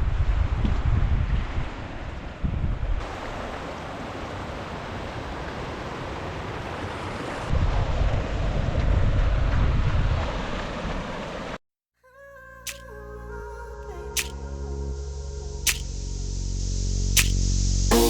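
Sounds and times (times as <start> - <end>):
wind buffeting microphone: 0.0 - 3.0, 7.5 - 10.4
rushing water: 3.0 - 7.5.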